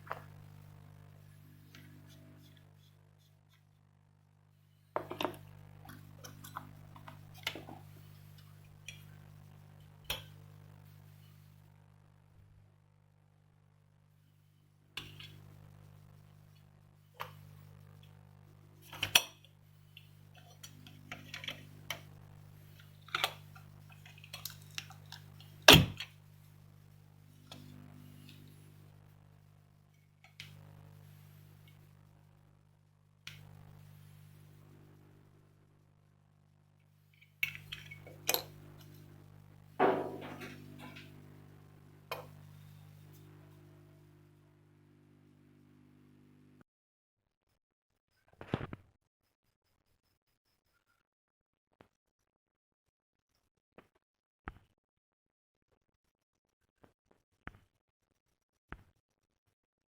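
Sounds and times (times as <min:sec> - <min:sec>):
steady low hum: 0:00.0 - 0:46.6
louder knocks: 0:39.8 - 0:40.5.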